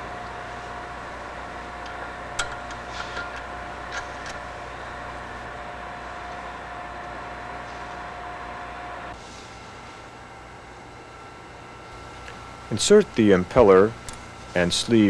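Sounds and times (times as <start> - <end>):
steady hum: 0.0 - 15.0
metal tools clicking: 1.8 - 4.4.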